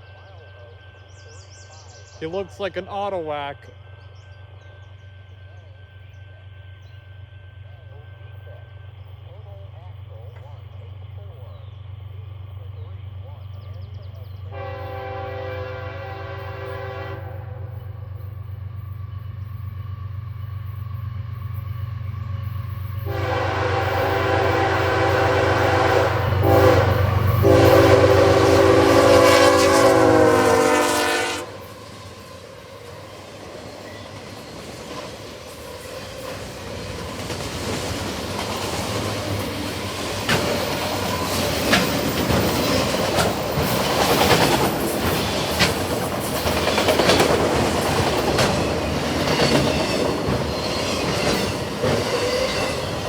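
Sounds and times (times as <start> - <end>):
locomotive engine drone: 0.0 - 53.0
freight cars rumbling and clicking: 7.6 - 14.5, 31.6 - 53.0
locomotive air horn: 14.5 - 17.8, 23.0 - 31.8.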